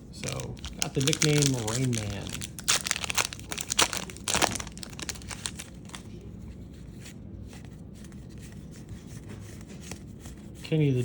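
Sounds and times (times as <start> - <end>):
low room hum: 0.0 - 11.0
trading cards rustling: 0.2 - 6.2.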